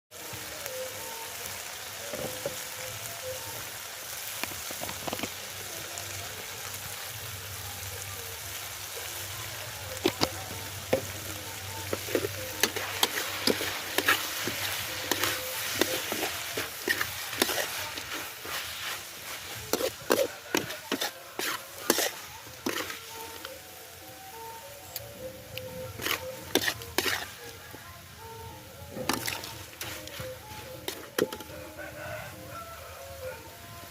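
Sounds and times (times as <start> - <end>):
frying in hot oil sizzle: 0.1 - 33.9
utensil scraping a pan: 10.0 - 23.1, 26.0 - 27.4.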